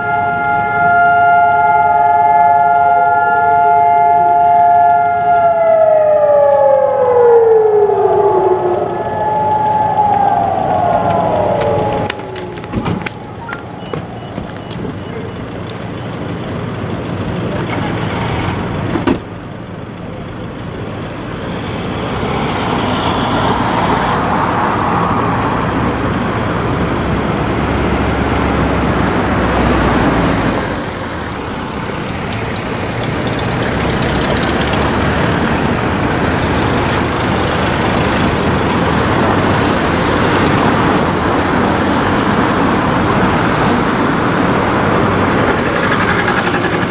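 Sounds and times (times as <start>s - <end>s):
vehicles passing: 0.0s - 46.9s.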